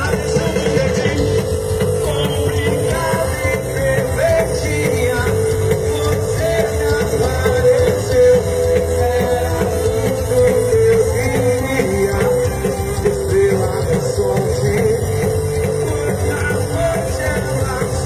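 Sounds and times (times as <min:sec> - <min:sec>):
rock music: 0:00.0 - 0:18.0.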